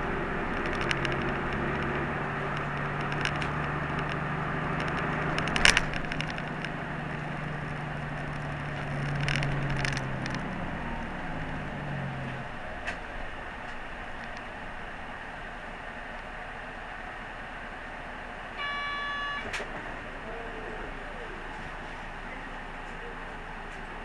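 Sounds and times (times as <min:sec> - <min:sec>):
tyre noise: 0:00.0 - 0:18.0
light rattles: 0:00.0 - 0:18.3
bus engine drone: 0:00.0 - 0:24.0
sharp clack: 0:00.2 - 0:15.3.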